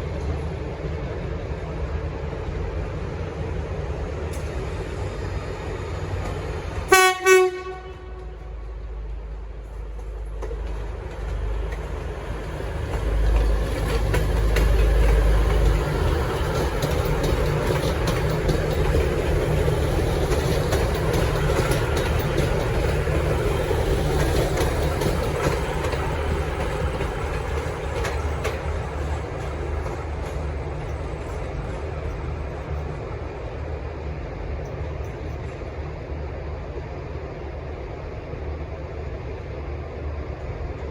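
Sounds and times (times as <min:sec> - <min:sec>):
train engines rumbling: 0:00.0 - 0:40.9
train horn blasts: 0:06.9 - 0:08.8.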